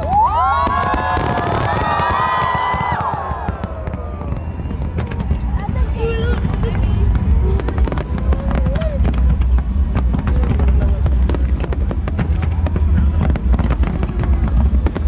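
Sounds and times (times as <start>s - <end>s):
deep rumble of booms: 0.4s - 15.0s
fireworks cracks and pops: 0.6s - 5.3s.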